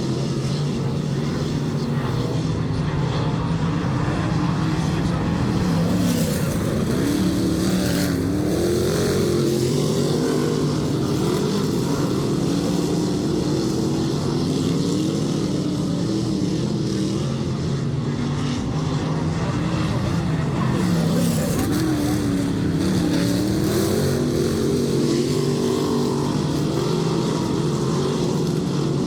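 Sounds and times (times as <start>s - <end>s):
race car engines: 0.0s - 29.0s.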